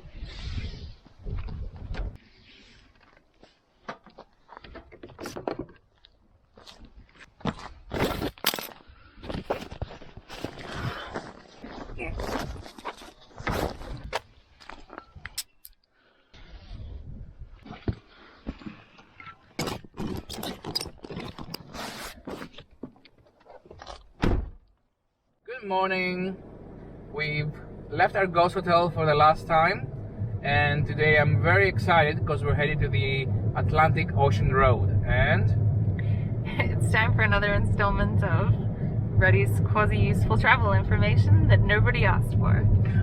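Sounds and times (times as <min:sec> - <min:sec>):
crunching and scraping handling noises: 0:01.0 - 0:15.4, 0:17.6 - 0:24.2.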